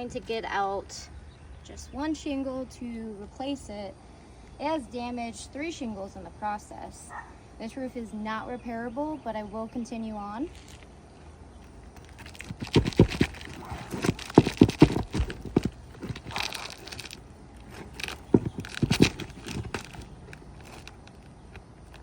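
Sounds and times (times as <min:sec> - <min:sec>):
shingle scraping: 0:11.6 - 0:22.0.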